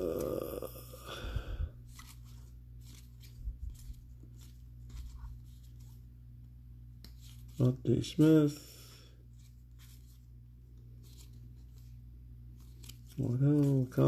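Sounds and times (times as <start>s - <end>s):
steady low hum: 0.0s - 14.0s
cards rustling and clicking: 1.8s - 6.0s, 7.0s - 7.8s, 9.3s - 14.0s.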